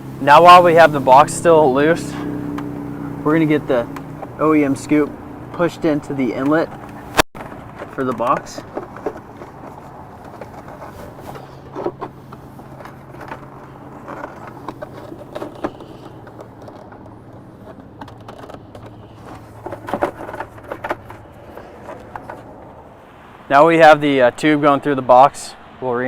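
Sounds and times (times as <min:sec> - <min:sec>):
plastic parts scraping and knocking: 0:05.6 - 0:22.8.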